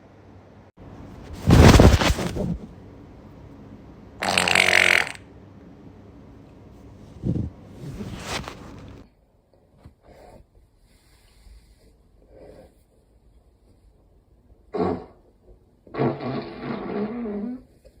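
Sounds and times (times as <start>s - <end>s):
person farting: 4.2s - 5.2s, 14.8s - 15.2s, 15.9s - 17.6s.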